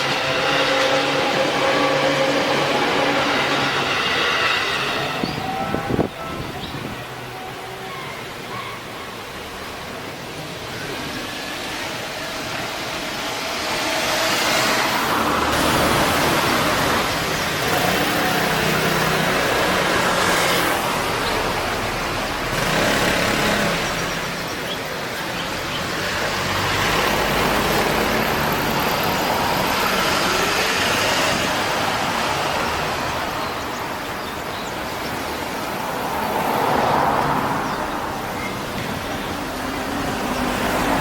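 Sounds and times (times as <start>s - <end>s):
cars passing: 0.0s - 41.0s.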